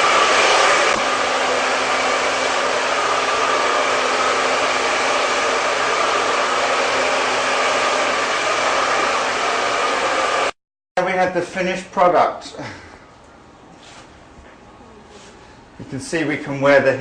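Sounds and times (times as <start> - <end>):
hair dryer blowing: 0.0 - 10.6.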